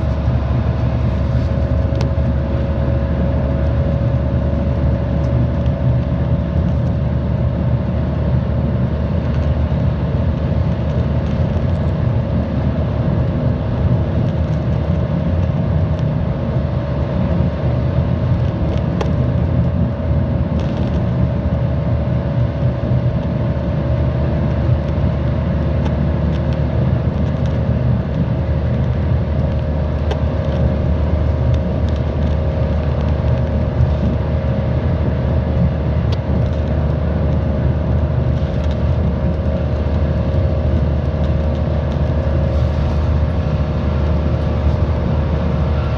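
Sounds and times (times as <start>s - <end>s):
steady whine: 0.0s - 5.5s, 28.4s - 45.9s
bus engine and road rumble: 0.0s - 45.9s.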